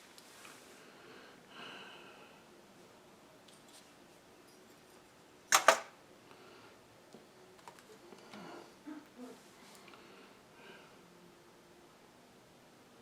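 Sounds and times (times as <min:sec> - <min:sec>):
low room noise: 0:00.0 - 0:13.0
sharp double click: 0:05.5 - 0:05.9.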